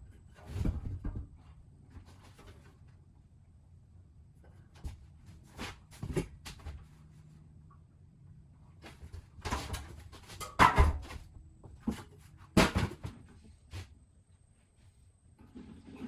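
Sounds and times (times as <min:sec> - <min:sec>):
objects clattering being set down: 0:09.0 - 0:13.4.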